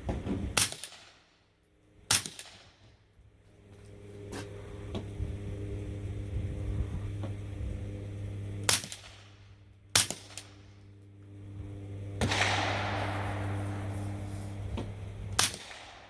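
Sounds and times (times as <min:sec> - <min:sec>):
steady low hum: 0:03.0 - 0:16.0
suppressed gunshots: 0:08.7 - 0:09.4, 0:12.2 - 0:16.0.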